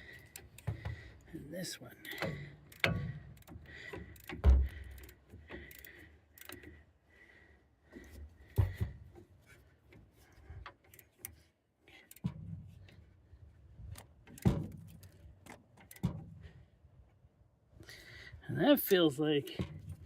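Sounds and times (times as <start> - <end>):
socket wrench clicking and rattling: 2.0 - 6.8.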